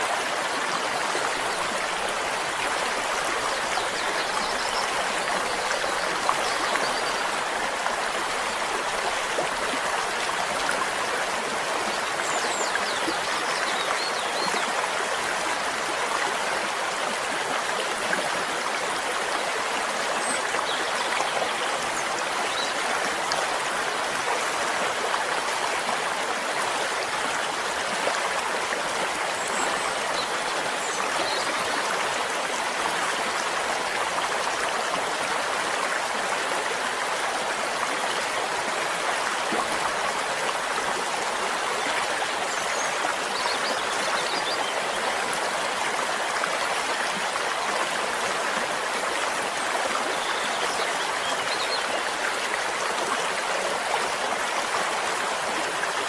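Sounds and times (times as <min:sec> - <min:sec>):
stream babbling: 0:00.0 - 0:56.0.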